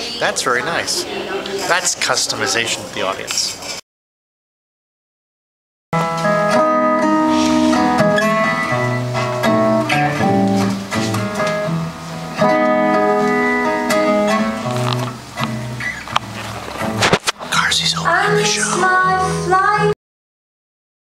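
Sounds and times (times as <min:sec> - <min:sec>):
acoustic guitar picking and strumming: 0:06.0 - 0:19.9.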